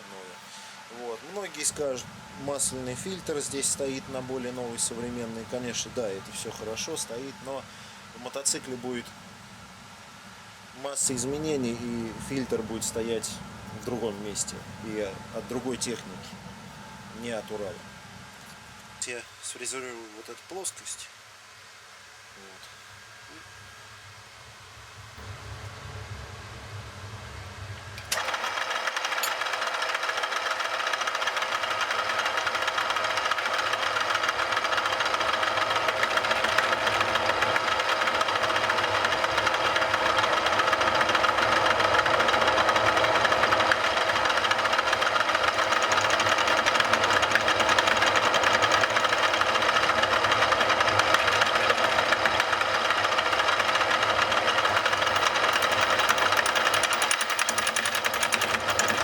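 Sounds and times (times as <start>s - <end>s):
milling machine cutting metal: 28.0s - 59.0s.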